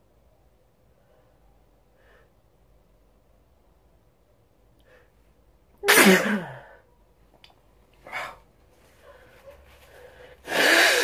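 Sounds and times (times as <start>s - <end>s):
person sneezing: 5.8s - 6.8s, 10.5s - 11.0s
short sharp breath: 9.0s - 11.0s.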